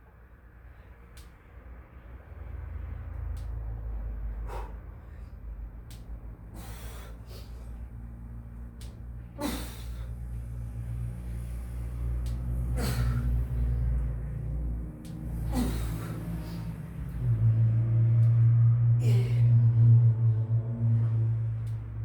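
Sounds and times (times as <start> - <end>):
low rumble: 2.1 - 22.0
person breathing hard: 4.2 - 17.6, 18.9 - 20.2.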